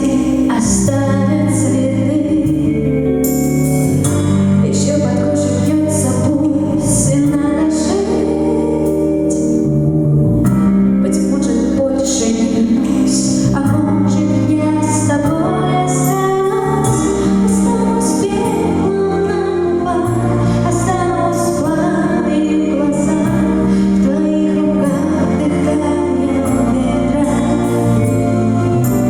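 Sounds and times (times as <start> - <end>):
woman singing: 0.0 - 9.7, 11.0 - 29.0
band playing: 23.1 - 29.0.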